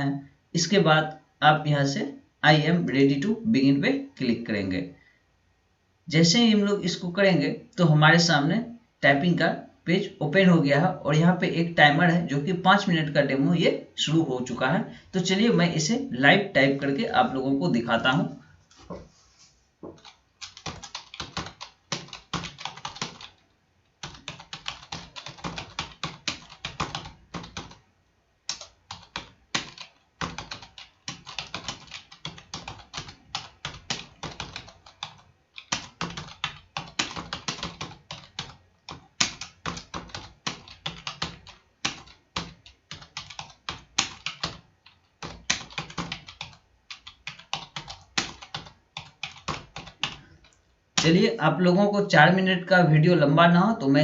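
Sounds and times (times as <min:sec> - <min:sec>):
computer keyboard typing: 0:19.9 - 0:27.8, 0:28.4 - 0:51.2.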